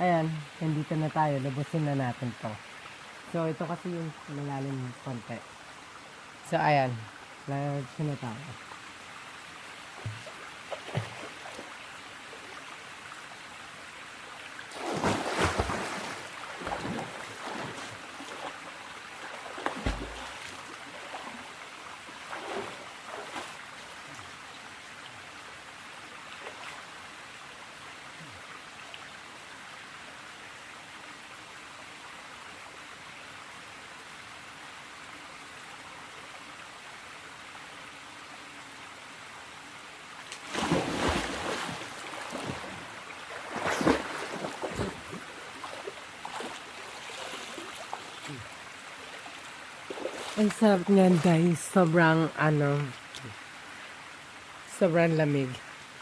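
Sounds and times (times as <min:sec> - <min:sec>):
stream water running: 0:00.0 - 0:56.0
splashing in water: 0:14.7 - 0:21.5, 0:22.2 - 0:23.7, 0:40.3 - 0:51.3.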